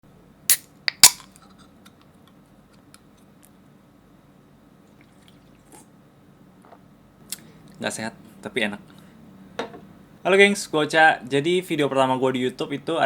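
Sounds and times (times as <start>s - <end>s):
hard objects clicking together: 0.5s - 1.4s.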